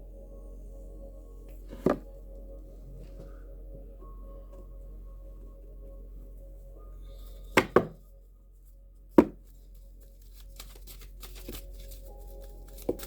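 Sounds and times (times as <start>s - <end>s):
soft ambient music: 0.0s - 13.0s
cards being shuffled: 10.2s - 13.0s.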